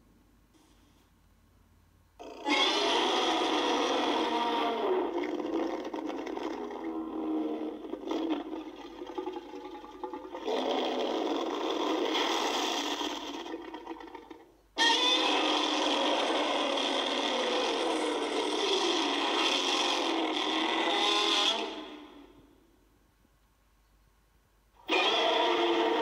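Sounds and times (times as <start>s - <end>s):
monster roar: 2.2s - 8.7s, 10.3s - 13.6s, 14.8s - 22.4s, 24.8s - 26.0s.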